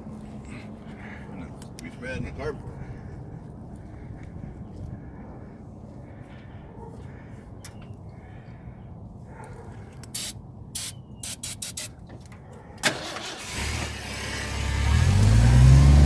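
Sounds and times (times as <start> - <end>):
aerosol spray spurts: 10.2 - 12.0.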